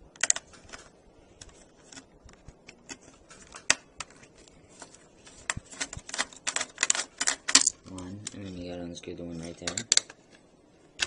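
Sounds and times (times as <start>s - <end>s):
screwdriver clicking and scraping: 0.2s - 2.1s, 5.4s - 8.4s.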